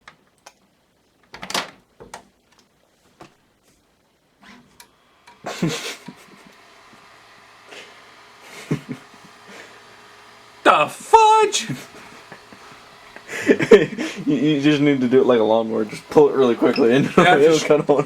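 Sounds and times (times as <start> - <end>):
steady low hum: 4.4 - 18.0.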